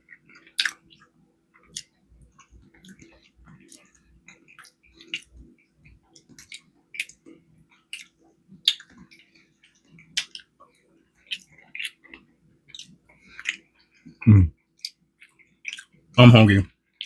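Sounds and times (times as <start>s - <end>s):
chewing with wet smacks: 0.0s - 16.0s
faint hum: 16.2s - 16.7s.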